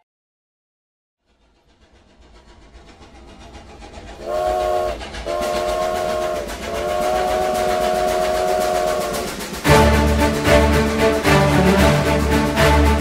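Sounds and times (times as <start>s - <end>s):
train rumbling: 1.2s - 13.0s
train whistle chord: 4.2s - 13.0s.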